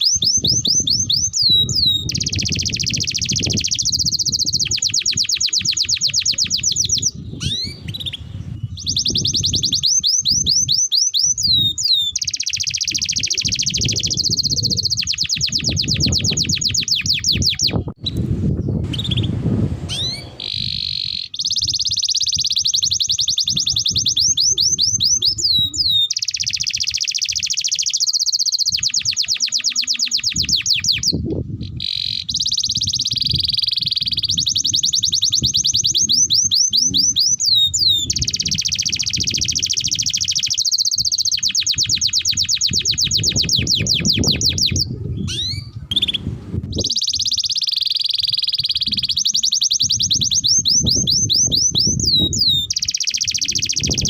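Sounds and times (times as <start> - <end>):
canary singing trills: 0.0 - 19.3, 19.9 - 54.0.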